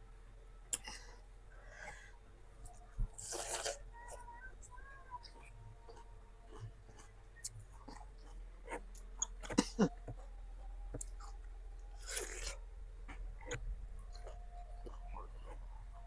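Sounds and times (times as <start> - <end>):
crunchy fruit chewing: 2.6 - 3.8, 5.3 - 16.0.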